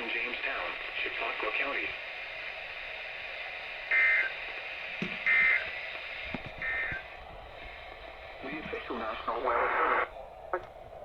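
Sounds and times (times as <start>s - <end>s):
radio hiss: 0.0s - 11.0s
buzzy alert data tones: 6.6s - 7.0s.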